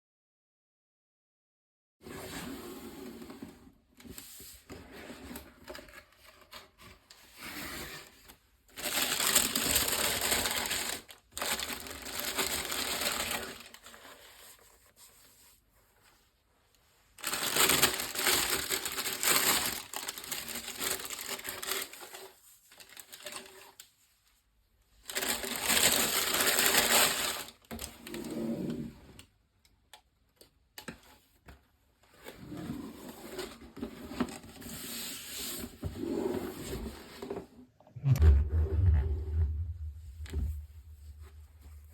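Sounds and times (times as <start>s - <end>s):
paper packaging rustling: 8.7s - 14.8s, 17.2s - 23.8s, 25.1s - 27.5s.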